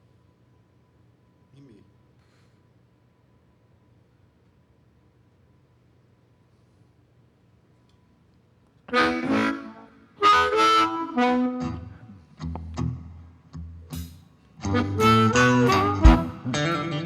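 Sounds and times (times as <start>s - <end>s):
blues harmonica riffs: 8.9s - 14.0s, 14.6s - 17.0s
low bass notes: 14.6s - 17.0s.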